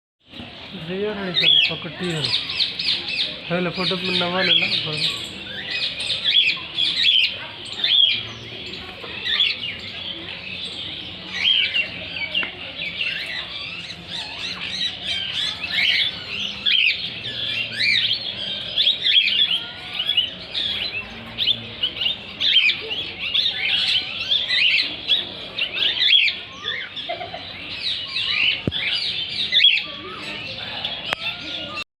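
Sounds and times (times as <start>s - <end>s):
parrots chirping and squawking: 0.3s - 31.8s.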